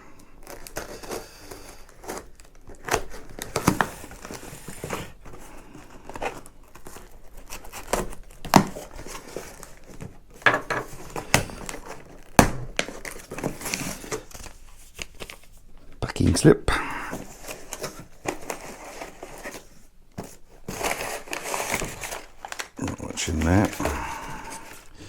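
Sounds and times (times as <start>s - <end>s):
packing material crumpling: 0.4s - 5.1s, 20.7s - 24.8s.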